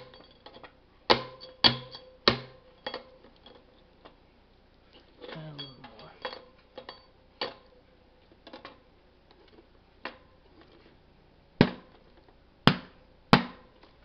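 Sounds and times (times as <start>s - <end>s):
tool tapping on metal: 0.0s - 3.2s.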